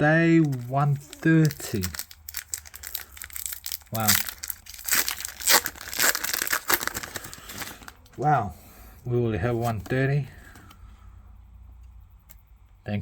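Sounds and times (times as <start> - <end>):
foil wrapper tearing and crinkling: 0.4 - 8.0.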